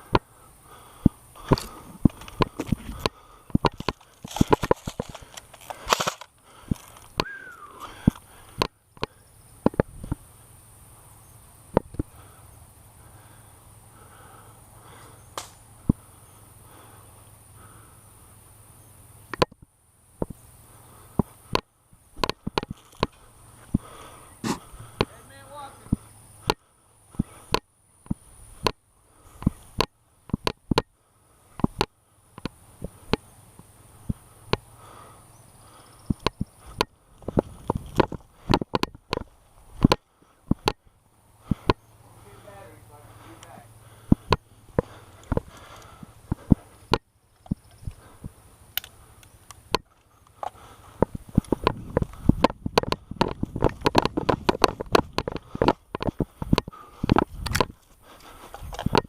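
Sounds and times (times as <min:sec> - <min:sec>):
low outdoor background: 0:00.0 - 0:59.0
airsoft guns firing: 0:04.3 - 0:06.2.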